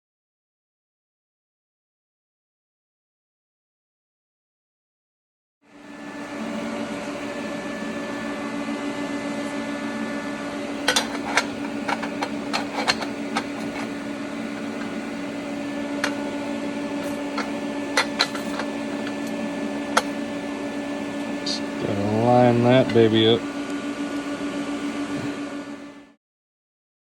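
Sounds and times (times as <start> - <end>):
steady machine hum: 5.6 - 26.2.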